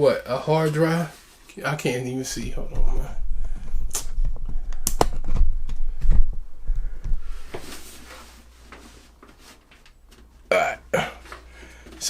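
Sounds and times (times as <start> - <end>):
low rumble: 2.3 - 8.1.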